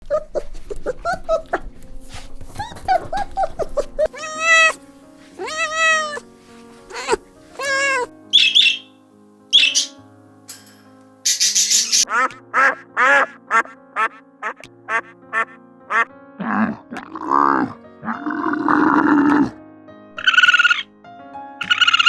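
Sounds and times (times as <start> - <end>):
soft background music: 0.0 - 22.0
cats meowing: 2.6 - 4.8, 5.4 - 8.8
high scratchy cat calls: 3.8 - 4.8, 5.4 - 8.9.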